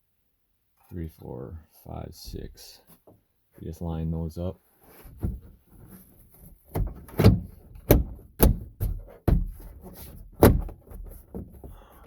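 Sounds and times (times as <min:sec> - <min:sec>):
plastic console thumping into place: 0:06.7 - 0:11.8.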